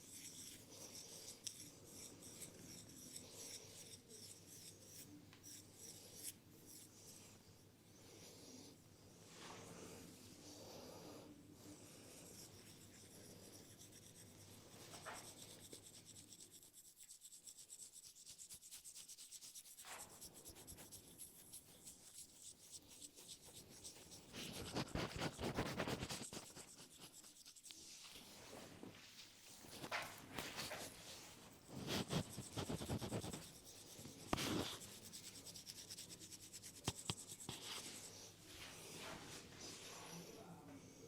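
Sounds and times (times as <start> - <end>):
hands rubbing and scratching hair: 17.9 - 40.1.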